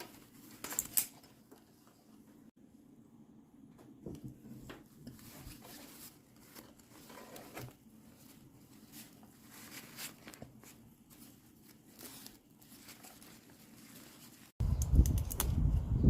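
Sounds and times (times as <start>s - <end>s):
packaging rustling and crinkling: 5.1s - 14.6s.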